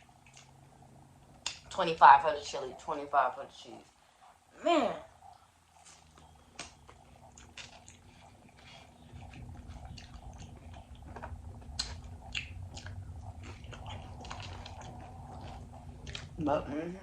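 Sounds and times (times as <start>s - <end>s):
crunchy chewing: 0.0s - 1.8s, 5.2s - 16.4s
low rumble: 8.1s - 16.6s
wet mouth clicks: 9.4s - 15.3s.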